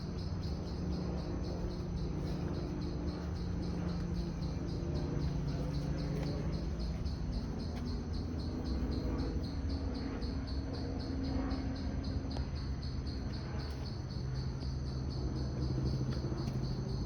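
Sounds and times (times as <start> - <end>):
constant low hum: 0.0 - 17.0
insects pulsing chirp: 0.0 - 17.0.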